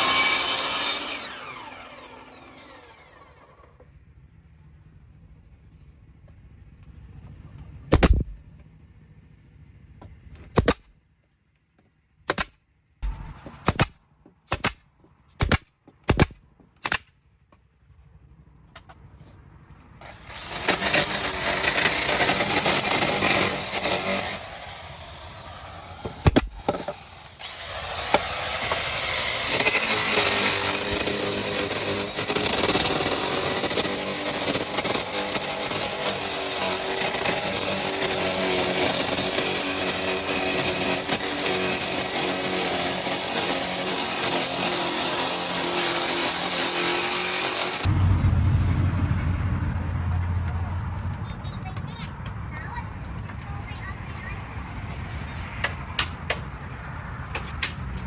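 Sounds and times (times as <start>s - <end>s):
power tool running: 0.0s - 3.9s, 20.0s - 47.9s.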